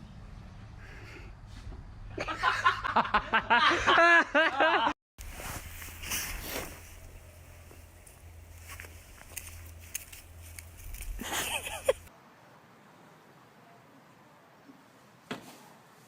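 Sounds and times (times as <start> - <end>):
person laughing hard: 2.2 - 5.0, 11.2 - 12.1.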